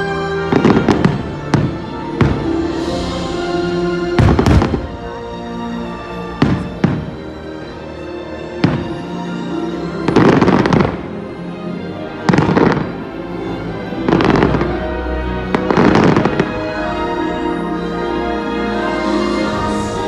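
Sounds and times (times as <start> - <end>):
soundtrack music: 0.0 - 20.0
fireworks bursting with crackle: 0.5 - 3.1, 4.2 - 5.0.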